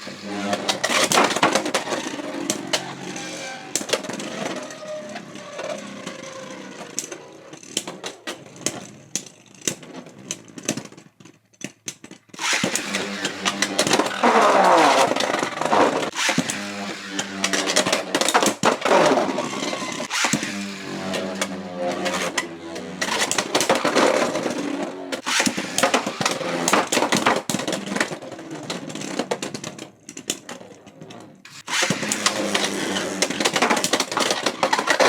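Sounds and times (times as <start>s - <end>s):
spinning tops whirring: 12.4s - 27.2s, 31.5s - 35.0s.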